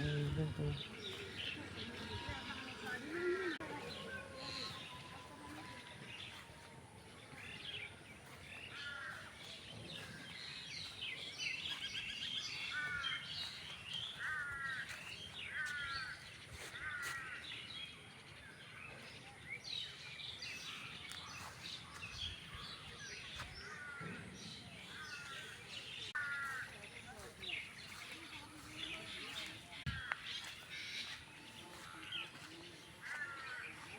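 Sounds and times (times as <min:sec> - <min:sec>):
birds calling and chirping: 0:00.0 - 0:33.9.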